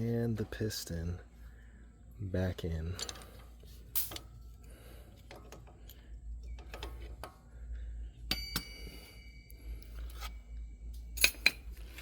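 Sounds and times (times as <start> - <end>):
metal parts clicking and knocking: 2.9 - 4.4, 11.0 - 12.0
sharp ringing metal clink: 8.3 - 9.6, 10.9 - 11.7.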